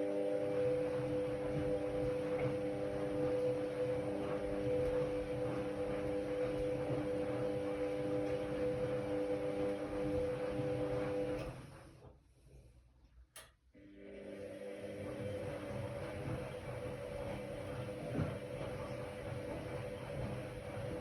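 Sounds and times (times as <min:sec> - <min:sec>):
washer-dryer motor hum: 0:00.0 - 0:12.7, 0:13.8 - 0:21.0.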